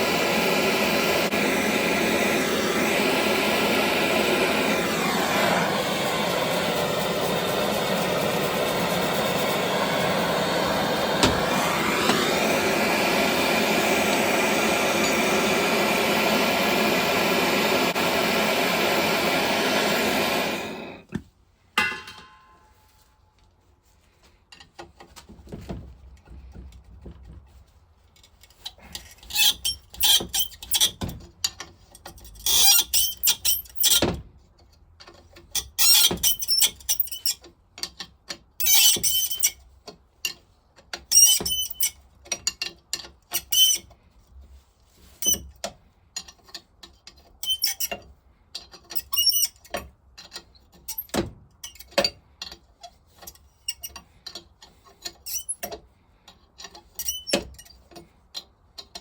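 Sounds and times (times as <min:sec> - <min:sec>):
metallic clicks and knocks: 0:45.6 - 0:59.0.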